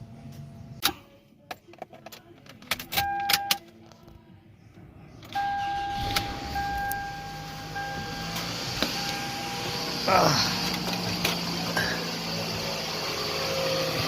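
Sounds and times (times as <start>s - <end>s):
car engine starting and running: 5.2s - 14.0s
warning chime: 5.4s - 10.1s.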